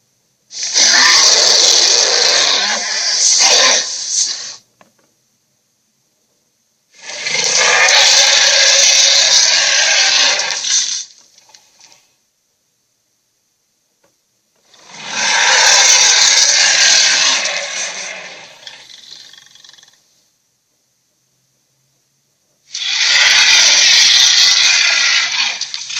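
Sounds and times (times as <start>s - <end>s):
monster roaring: 0.6s - 4.6s, 7.0s - 10.9s, 14.8s - 19.5s, 22.7s - 25.9s.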